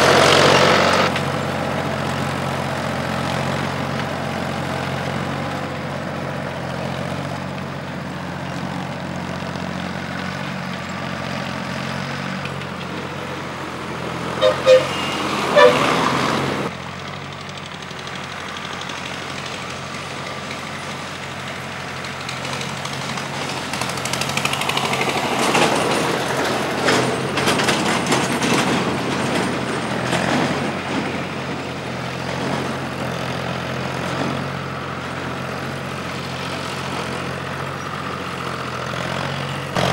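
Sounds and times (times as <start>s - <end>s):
tractor engine running: 0.0s - 39.9s
short loud toots: 14.4s - 16.1s.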